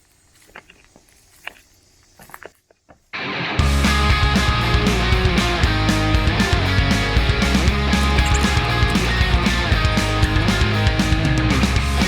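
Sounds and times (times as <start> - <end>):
rock music with electric guitar: 3.2 - 12.0.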